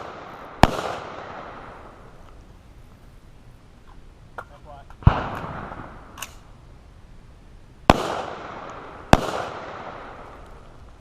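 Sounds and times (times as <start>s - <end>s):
gunshots with long echo: 0.0s - 2.1s, 5.0s - 6.5s, 7.9s - 10.6s.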